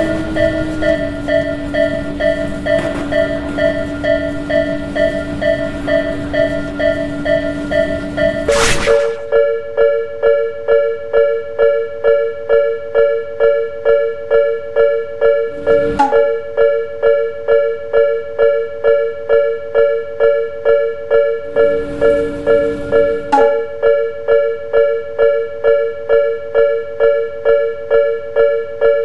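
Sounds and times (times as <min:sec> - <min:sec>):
level-crossing warning bell ringing: 0:00.0 - 0:08.5, 0:09.3 - 0:29.0
short burst of noise: 0:08.4 - 0:09.4.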